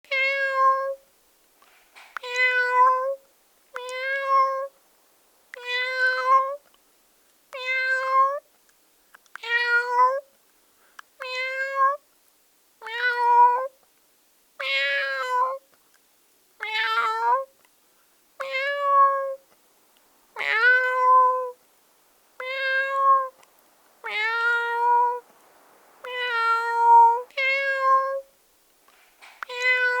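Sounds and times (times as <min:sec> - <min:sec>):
person imitating cat meows: 0:16.6 - 0:17.5, 0:18.4 - 0:19.4, 0:22.4 - 0:23.4, 0:26.1 - 0:28.3, 0:29.5 - 0:30.0.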